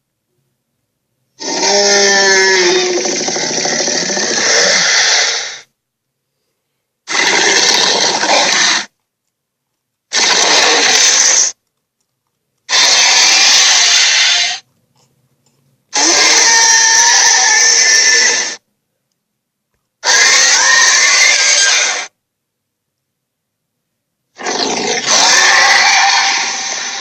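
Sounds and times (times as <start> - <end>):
monster growling: 1.4 - 5.6, 7.1 - 8.9, 10.1 - 11.6, 16.0 - 18.6, 24.4 - 27.0.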